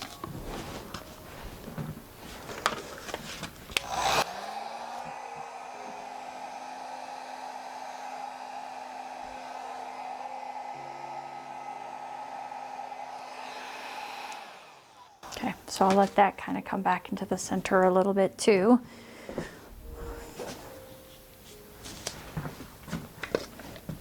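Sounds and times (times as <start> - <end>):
hair dryer running: 1.0 - 16.2.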